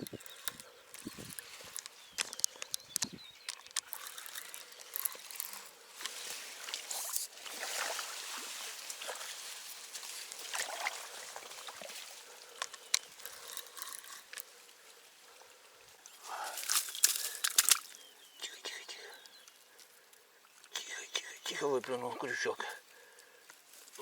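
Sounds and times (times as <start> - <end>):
clicks and rustles: 0.0 - 7.3, 12.5 - 14.5, 16.6 - 18.0
water trickling and splashing: 3.5 - 18.0.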